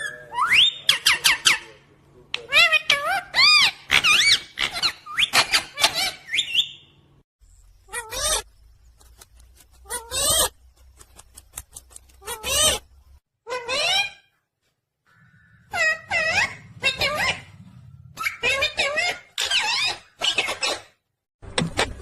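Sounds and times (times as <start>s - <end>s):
parrot chirping: 2.4s - 7.0s, 15.3s - 20.9s.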